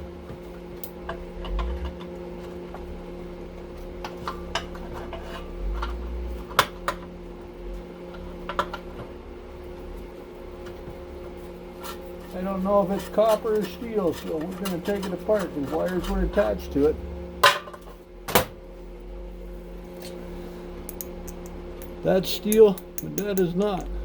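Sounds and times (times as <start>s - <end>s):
steady low hum: 0.0s - 24.0s
metallic clinks of hand tools: 20.9s - 24.0s.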